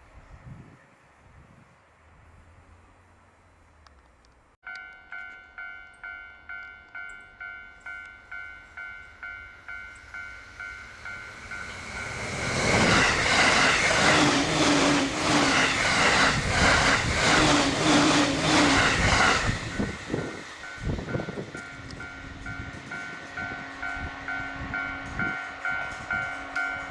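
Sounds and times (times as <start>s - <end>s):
level-crossing alarm ringing: 4.7s - 14.9s, 18.5s - 26.9s
train passing at high speed: 5.2s - 26.9s.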